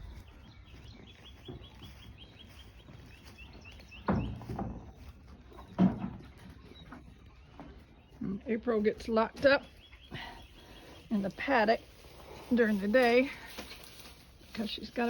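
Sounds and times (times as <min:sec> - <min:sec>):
bird chirping: 0:00.0 - 0:11.8.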